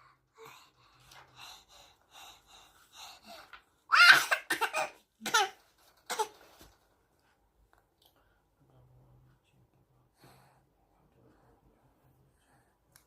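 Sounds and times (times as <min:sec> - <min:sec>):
baby coughing breathily: 0:03.9 - 0:06.4.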